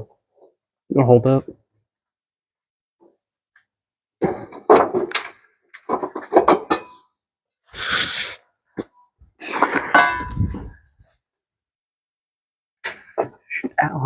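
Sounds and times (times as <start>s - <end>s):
short hissing burst: 7.8s - 8.4s.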